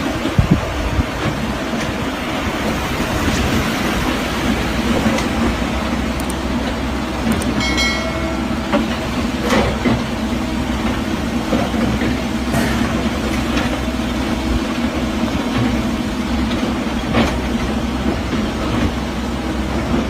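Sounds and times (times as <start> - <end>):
diesel engine rumble: 0.0 - 20.0
metallic clanks of crawler tracks: 4.8 - 20.0.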